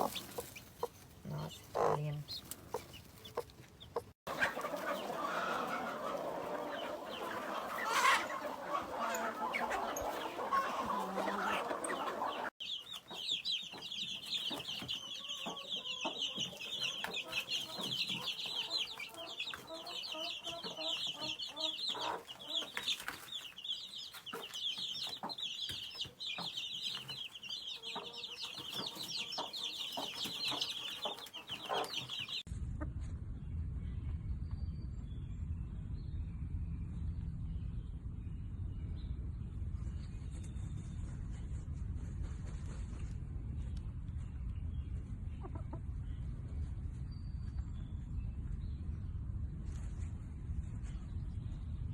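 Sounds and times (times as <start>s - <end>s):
hens clucking: 0.0s - 32.4s
chicks peeping: 0.0s - 32.5s, 44.6s - 46.5s.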